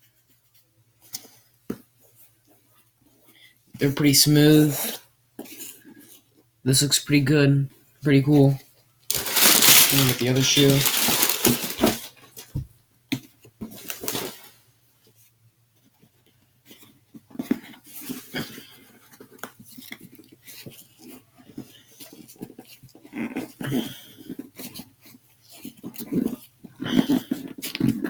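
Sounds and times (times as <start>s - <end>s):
sneaker handling taps and rustles: 9.1s - 12.7s, 13.7s - 14.5s.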